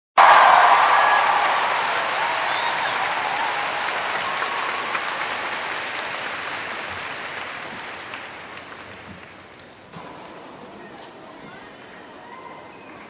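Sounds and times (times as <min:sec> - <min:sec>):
audience applauding: 0:00.2 - 0:09.9.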